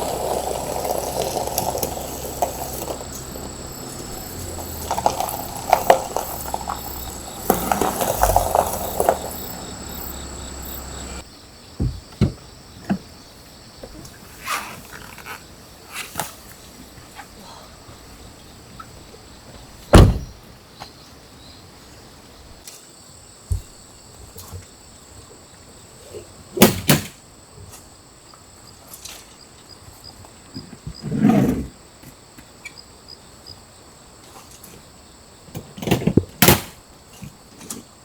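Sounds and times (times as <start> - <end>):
dull thump: 19.9 - 20.3.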